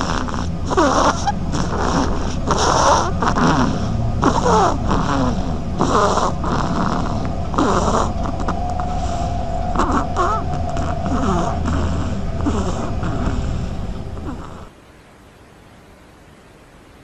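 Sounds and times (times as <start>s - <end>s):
duckling snoring: 0.0s - 14.7s.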